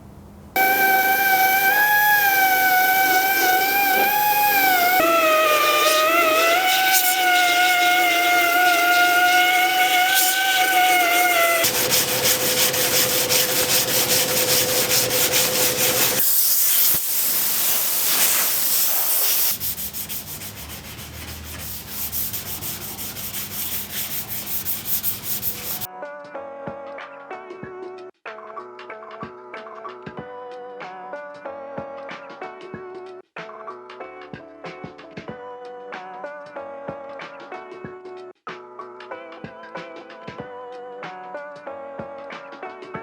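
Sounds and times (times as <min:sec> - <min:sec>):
motor whine: 0:00.6 - 0:16.2
power sander rasping: 0:00.6 - 0:25.9.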